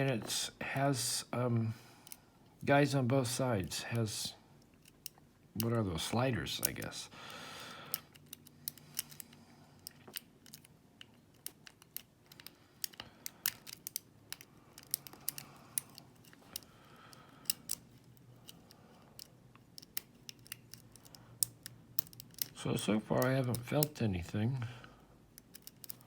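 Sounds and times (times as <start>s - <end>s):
lock pick clicking in padlock: 11.3s - 16.7s, 17.4s - 22.6s, 25.4s - 26.0s.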